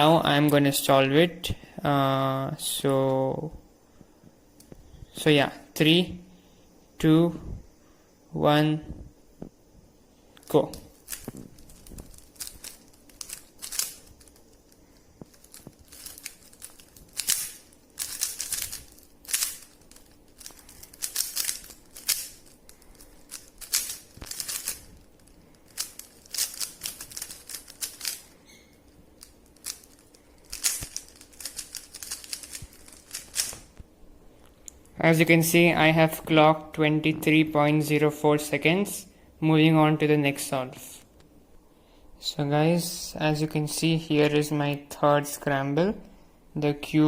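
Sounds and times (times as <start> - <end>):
puzzle cube clicking: 10.7 - 24.9, 25.7 - 28.6, 29.2 - 33.6.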